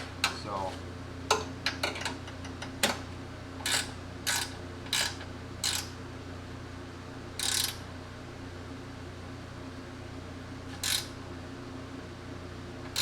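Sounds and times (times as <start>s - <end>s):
ratchet wrench clicking: 7.4s - 7.8s, 10.8s - 11.1s.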